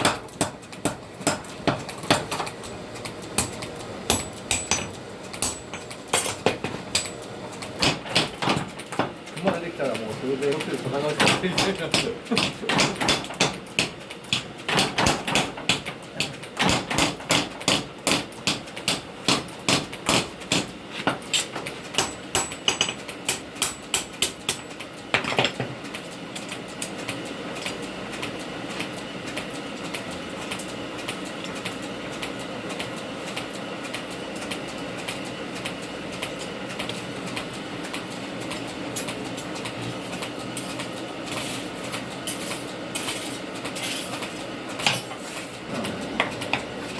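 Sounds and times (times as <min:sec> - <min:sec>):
hammer striking hot steel: 0:00.0 - 0:02.5, 0:03.3 - 0:07.2, 0:07.8 - 0:09.6, 0:11.1 - 0:25.3
steady mechanical noise: 0:00.0 - 0:46.9.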